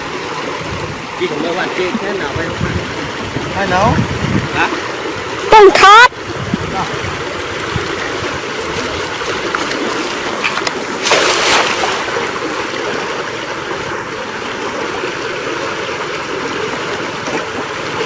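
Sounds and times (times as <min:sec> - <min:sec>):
floodwater rushing: 0:00.0 - 0:18.0
burst of water noise: 0:03.6 - 0:13.2.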